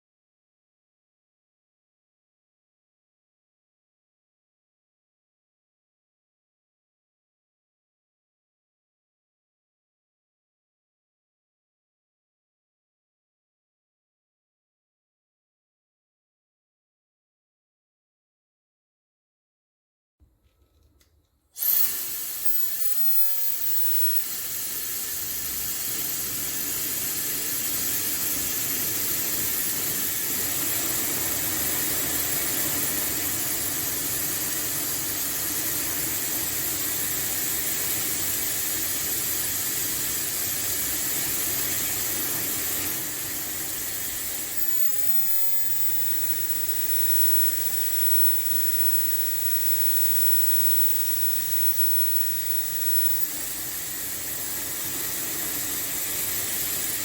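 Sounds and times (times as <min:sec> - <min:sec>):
hair dryer blowing: 0:21.6 - 0:57.0.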